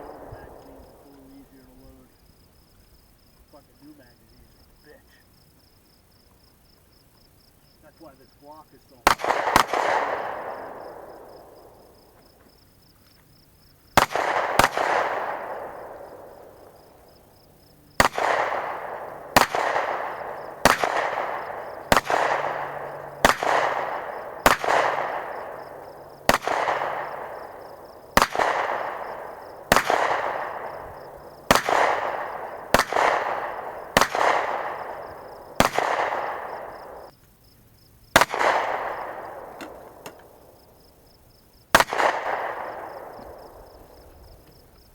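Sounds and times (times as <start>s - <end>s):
gunshots with echo: 0.0s - 2.2s, 7.8s - 12.2s, 13.9s - 17.3s, 17.9s - 37.1s, 38.1s - 40.5s, 41.7s - 44.4s.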